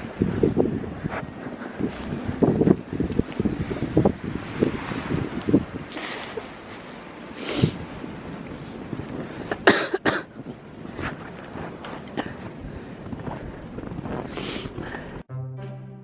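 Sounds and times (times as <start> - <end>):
person coughing: 9.5 - 10.3.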